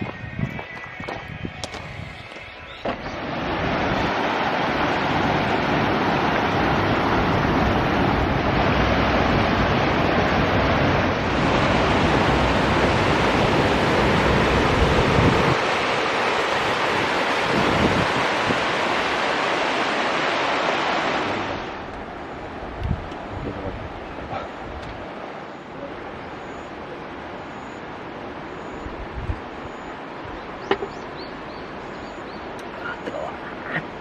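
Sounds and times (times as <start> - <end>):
stream rushing over rocks: 2.8 - 34.0.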